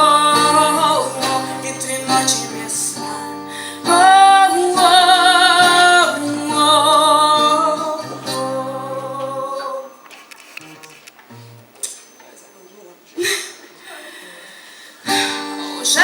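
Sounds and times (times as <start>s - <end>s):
pop instrumental backing: 0.0s - 9.6s
woman singing with vibrato: 0.0s - 10.0s, 15.1s - 16.0s.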